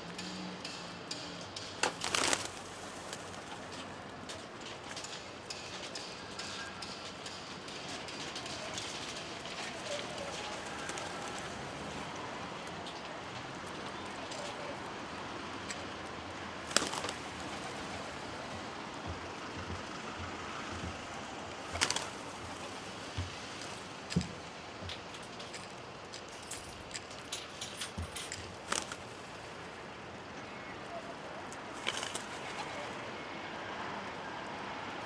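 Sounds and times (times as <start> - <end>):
outdoor background noise: 0.0 - 35.0
faint pigeon calls: 8.0 - 23.8, 28.0 - 34.8.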